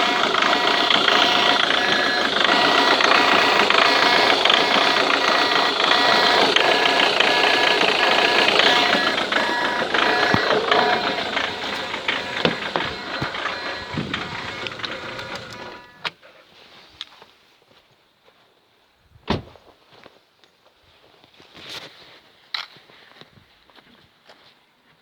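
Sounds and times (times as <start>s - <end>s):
diesel engine ticking clatter: 0.0s - 16.1s
sharp clicks: 0.0s - 16.2s.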